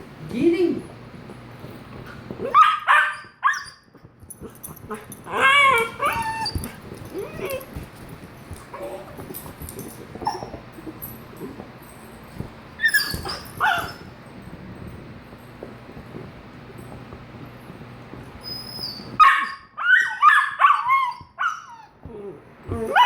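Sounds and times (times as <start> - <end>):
puppy crying: 2.4 - 3.9, 5.3 - 7.8, 12.8 - 14.0, 18.4 - 23.0.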